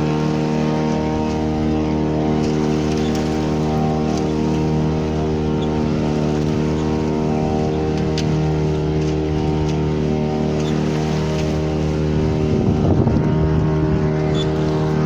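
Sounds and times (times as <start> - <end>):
boat engine droning: 0.0 - 15.0.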